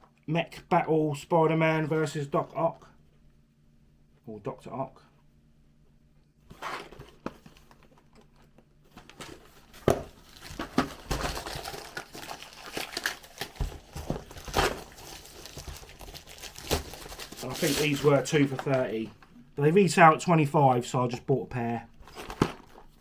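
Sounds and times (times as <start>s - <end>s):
packaging crinkling and rustling: 6.5s - 19.3s, 22.0s - 23.0s.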